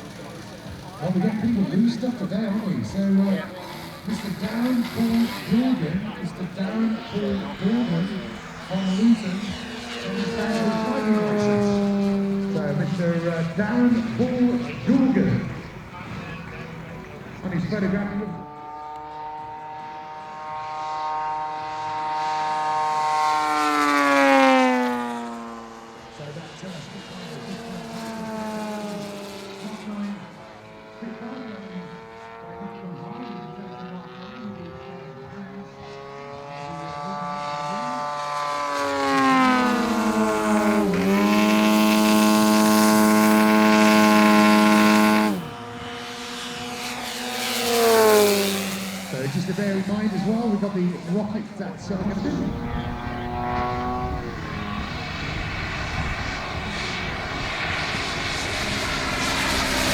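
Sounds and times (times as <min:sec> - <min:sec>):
model plane motor whining: 0:00.0 - 0:16.9, 0:37.0 - 0:59.9.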